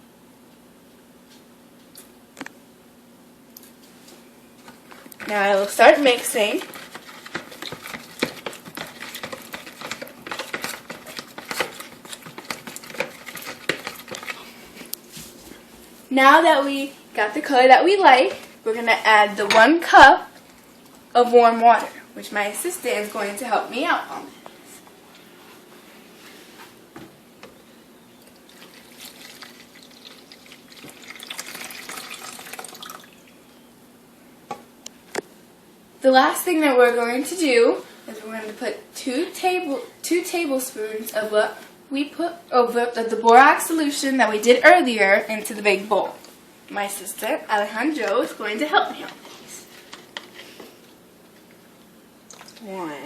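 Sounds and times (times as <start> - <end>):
spoon stirring in a bowl: 4.8 - 15.1
water pouring into a bowl: 28.4 - 33.3.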